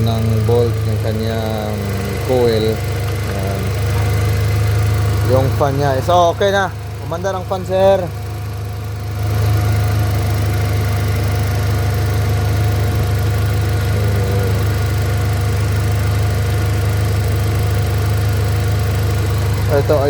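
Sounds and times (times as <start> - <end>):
car engine idling: 0.0 - 20.0
radiator cooling fan running: 0.0 - 20.0.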